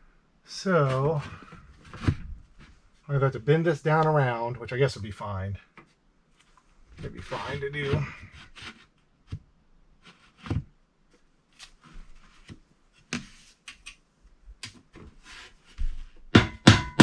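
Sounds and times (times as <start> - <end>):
hammer striking nails: 16.3 - 17.0.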